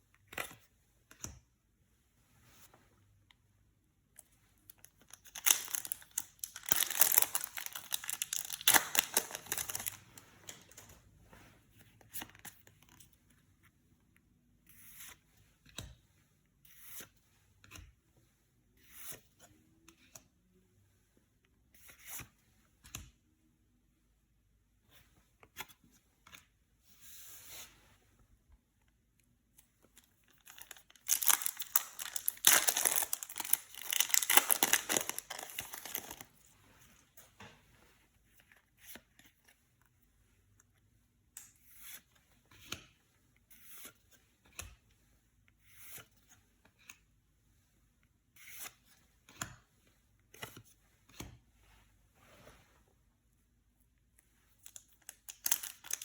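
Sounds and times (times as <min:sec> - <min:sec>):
packaging tearing and crinkling: 0:05.1 - 0:10.0, 0:30.4 - 0:36.2, 0:55.3 - 0:56.0
packaging rustling and tapping: 0:05.3 - 0:10.9, 0:30.5 - 0:36.2.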